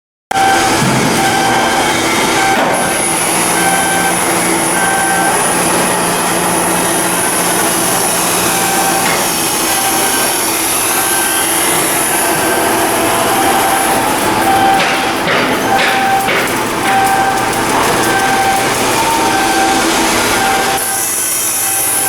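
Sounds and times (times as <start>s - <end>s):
short beeps: 0.3s - 5.5s, 13.2s - 16.3s, 16.9s - 22.0s
machinery noise with high whine: 0.3s - 22.0s.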